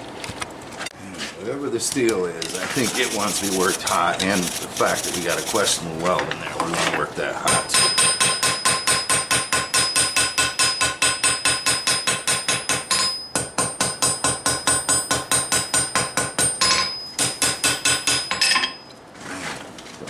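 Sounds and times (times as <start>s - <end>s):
hammer striking steel on anvil: 7.5s - 18.8s.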